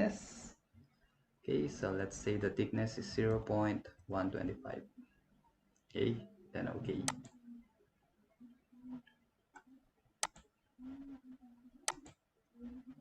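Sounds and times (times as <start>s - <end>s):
computer mouse clicking: 7.0s - 7.4s, 9.0s - 10.5s, 11.8s - 12.2s.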